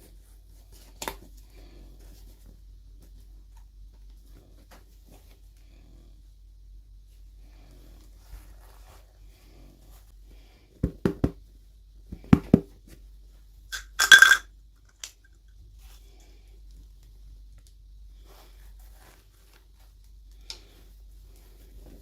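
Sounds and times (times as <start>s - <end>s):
small hard pieces tapping: 13.8s - 14.4s.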